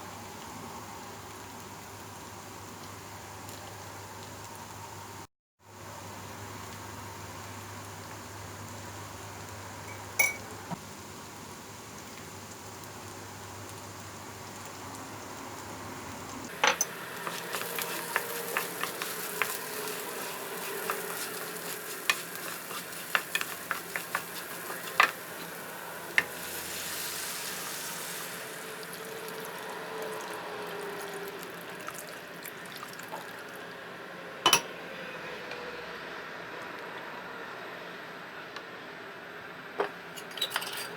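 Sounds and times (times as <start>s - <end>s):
food sizzling in a pan: 5.1s - 33.6s.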